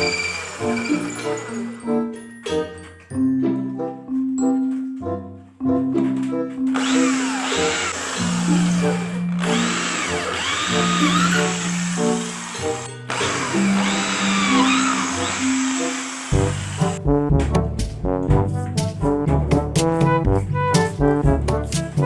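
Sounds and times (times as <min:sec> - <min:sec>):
power drill running: 0:00.0 - 0:01.9, 0:06.7 - 0:17.0
background music: 0:00.0 - 0:22.0.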